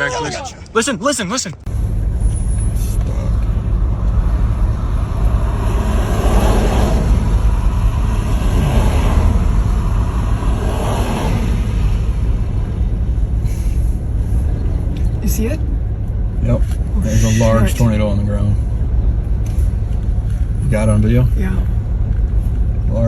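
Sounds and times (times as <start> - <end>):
tornado roaring: 2.8 - 13.6.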